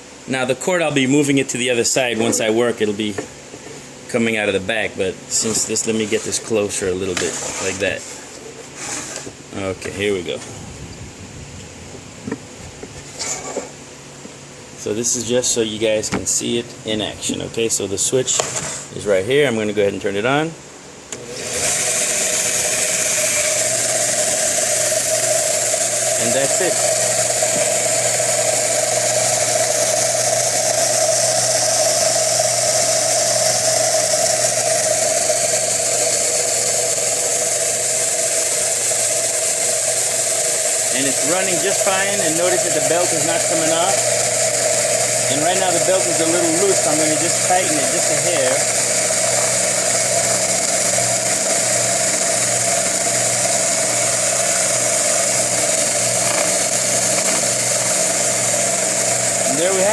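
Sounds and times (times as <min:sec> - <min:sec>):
belt sander motor humming: 0:21.1 - 0:59.9.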